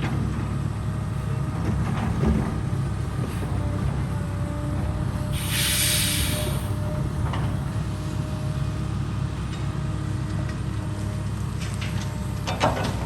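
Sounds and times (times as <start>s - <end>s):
construction machine engine rumbling: 0.0s - 13.0s
loud hiss: 5.3s - 8.2s.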